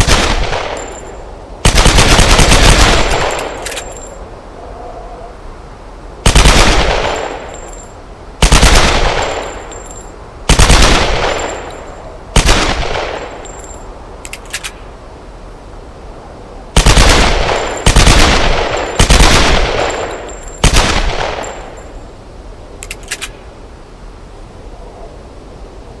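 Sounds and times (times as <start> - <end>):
pistol shots echoing: 8.4 - 9.7, 16.8 - 21.8.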